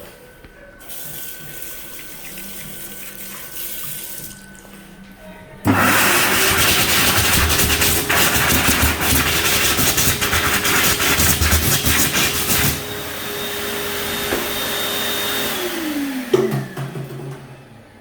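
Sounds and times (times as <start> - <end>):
electric hand dryer running: 5.6 - 18.0.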